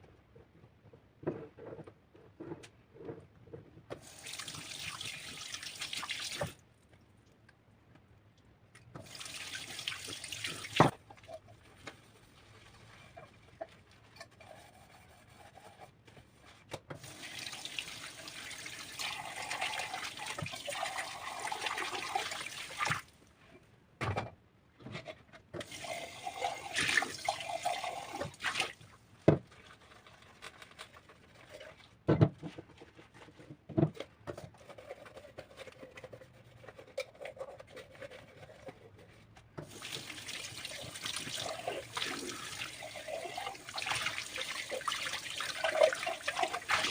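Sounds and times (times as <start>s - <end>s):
water running from a tap: 4.0s - 6.6s, 9.0s - 10.9s, 17.0s - 23.0s, 25.6s - 28.8s, 39.6s - 46.9s.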